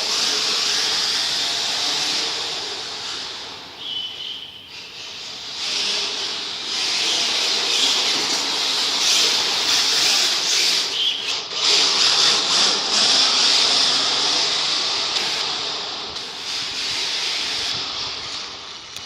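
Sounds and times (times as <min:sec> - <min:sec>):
model car hissing rush: 0:00.0 - 0:18.9
short high squeaks: 0:03.8 - 0:06.2.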